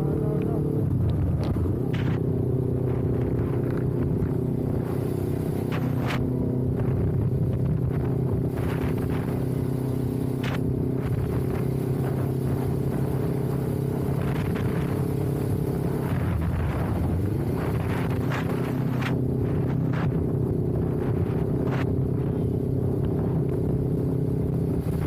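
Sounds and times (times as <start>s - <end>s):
motorcycle engine running: 0.0s - 25.0s
wind noise on microphone: 0.0s - 25.0s.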